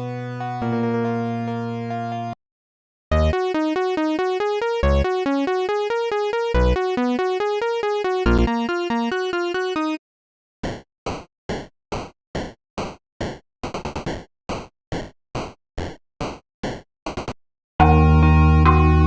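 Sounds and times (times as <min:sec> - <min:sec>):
staccato synthesizer notes: 0:03.2 - 0:09.9.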